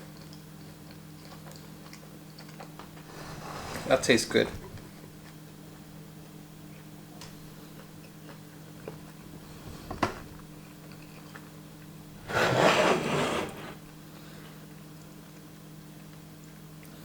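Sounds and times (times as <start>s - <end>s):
chewing clicks: 0.0s - 2.9s
rough rasping rubbing: 12.2s - 13.9s.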